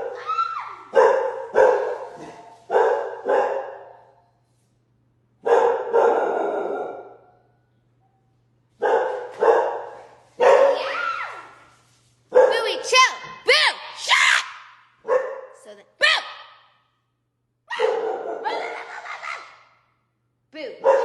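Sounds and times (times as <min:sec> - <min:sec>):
dog barking: 0:00.9 - 0:04.1, 0:05.4 - 0:07.3, 0:08.8 - 0:10.9, 0:12.3 - 0:12.9, 0:15.0 - 0:15.6, 0:17.7 - 0:19.6, 0:20.8 - 0:21.0.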